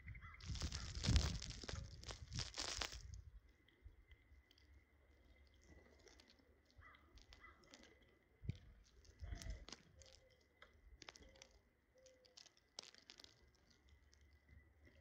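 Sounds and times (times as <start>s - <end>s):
birds pecking at food: 0.2s - 15.0s.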